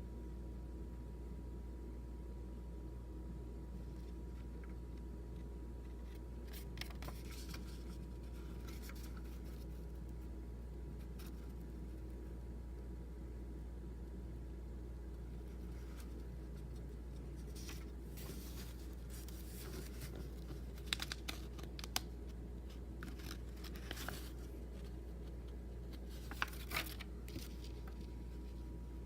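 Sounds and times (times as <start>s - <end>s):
paper pages rustling: 5.9s - 10.2s, 15.4s - 28.7s.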